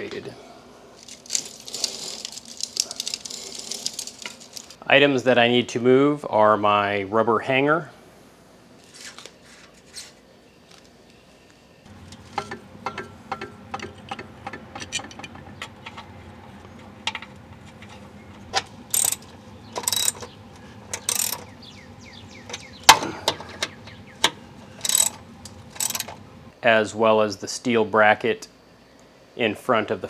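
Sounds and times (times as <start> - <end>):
hand tools clinking on metal: 1.0 - 4.8, 12.1 - 16.1, 17.1 - 21.6, 22.4 - 26.4
steady low hum: 11.9 - 26.6.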